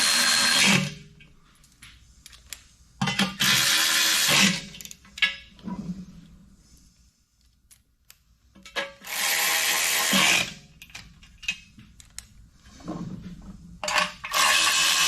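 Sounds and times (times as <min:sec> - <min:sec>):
power tool driving bolts: 0:03.2 - 0:04.8, 0:08.8 - 0:10.6, 0:13.9 - 0:15.0.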